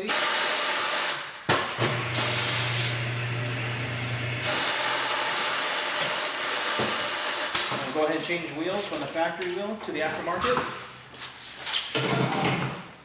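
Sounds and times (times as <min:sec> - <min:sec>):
motor hum: 0:01.9 - 0:04.5.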